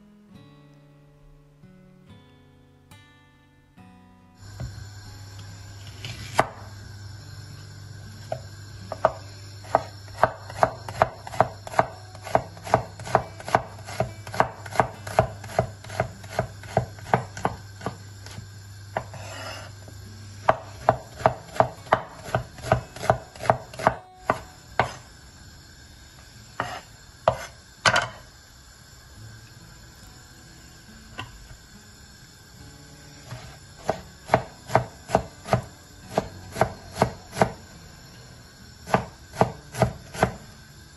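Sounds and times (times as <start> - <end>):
pumpkin scraping on a grater: 19.0 - 19.8.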